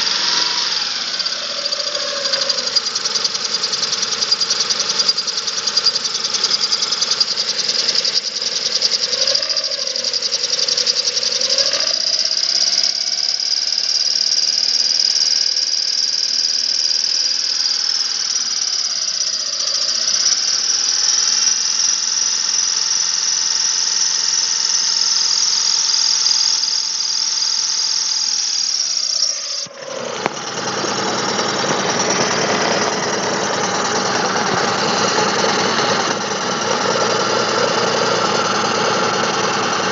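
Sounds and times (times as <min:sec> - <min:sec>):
high whistle: 0:00.0 - 0:39.9
engine ticking knock: 0:30.0 - 0:39.9.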